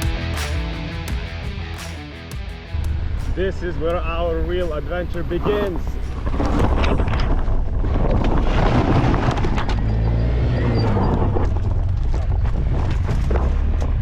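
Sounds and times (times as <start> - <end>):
wind buffeting microphone: 2.8 - 10.0.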